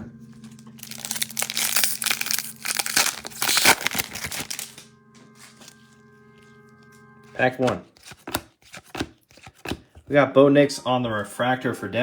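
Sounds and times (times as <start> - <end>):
plastic wrapping torn and crumpled: 0.8 - 4.8.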